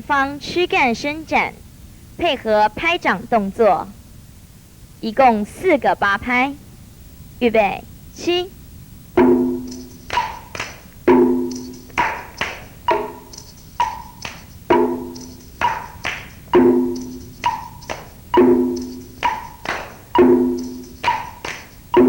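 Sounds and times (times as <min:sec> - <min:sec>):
wood block percussion beat: 0:09.2 - 0:22.0.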